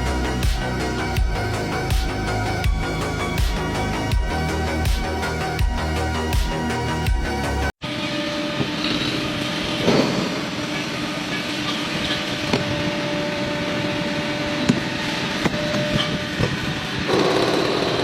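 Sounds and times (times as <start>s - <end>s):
welding arc crackling: 8.8s - 18.0s.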